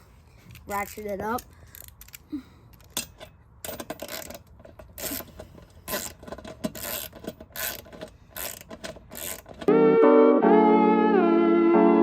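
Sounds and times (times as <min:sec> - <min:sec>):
ratchet wrench clicking: 0:00.8 - 0:05.2, 0:05.9 - 0:09.6.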